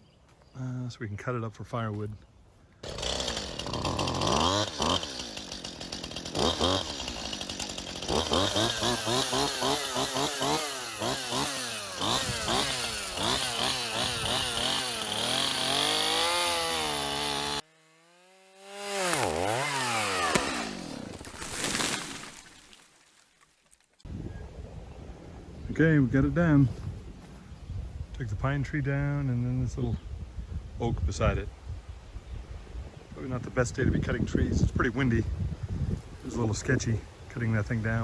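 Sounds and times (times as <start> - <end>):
chainsaw cutting tree trunk: 2.8 - 23.0.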